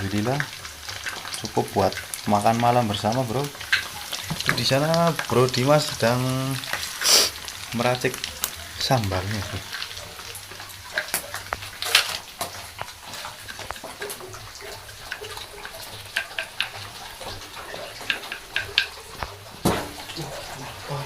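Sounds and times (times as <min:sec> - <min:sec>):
utensils tapping and clinking: 0:10.5 - 0:20.0.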